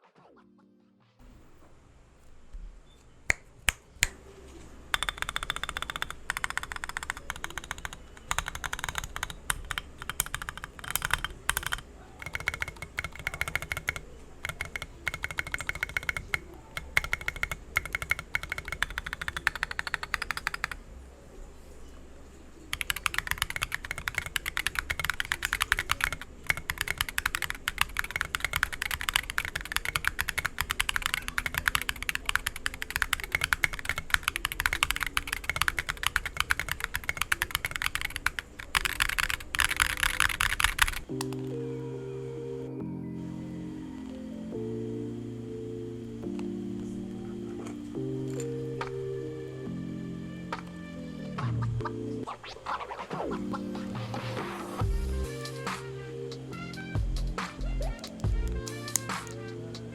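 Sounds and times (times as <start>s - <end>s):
mechanical keyboard typing: 4.9s - 20.8s, 22.6s - 41.5s, 57.7s - 59.5s.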